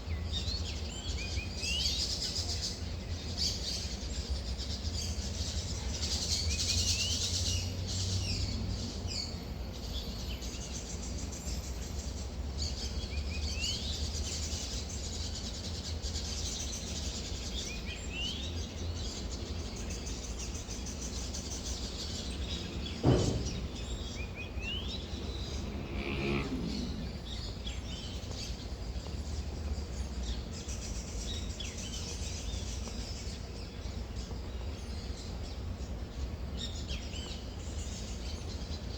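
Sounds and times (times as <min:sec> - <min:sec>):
birds chirping: 0:00.0 - 0:38.9
low rumble: 0:21.2 - 0:28.2.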